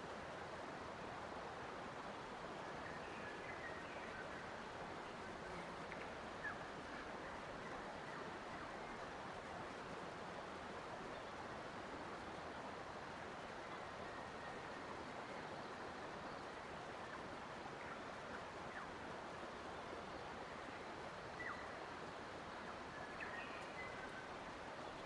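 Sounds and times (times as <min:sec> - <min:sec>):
flowing water: 0:00.0 - 0:25.0
faint bird chirps: 0:19.8 - 0:21.9, 0:22.5 - 0:25.0.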